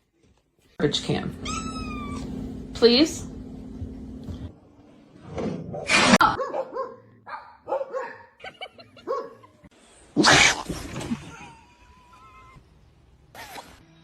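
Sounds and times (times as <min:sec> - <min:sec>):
dog barking and yipping: 0:05.7 - 0:08.4, 0:09.0 - 0:09.5.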